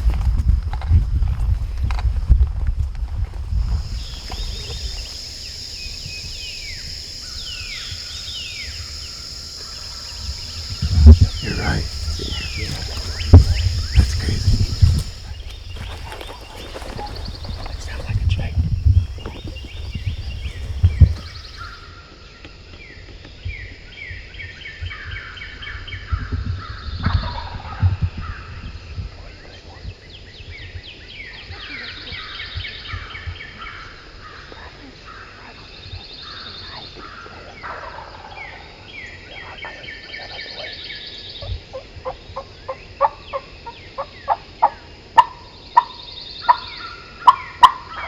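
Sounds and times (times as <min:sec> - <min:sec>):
low thumps on microphone: 0:00.0 - 0:21.7
high insect drone: 0:03.2 - 0:22.0
songbirds chirping: 0:03.3 - 0:21.9
turkey gobbling: 0:03.7 - 0:21.7.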